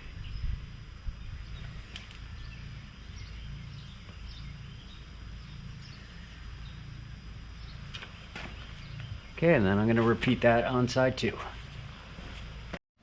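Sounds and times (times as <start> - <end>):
faint bird chirps: 0.0 - 9.8
steady low rumble: 0.0 - 12.8.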